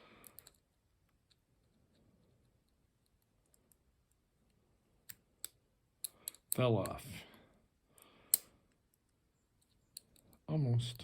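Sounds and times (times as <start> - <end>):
lock pick clicking in padlock: 8.3 - 8.5.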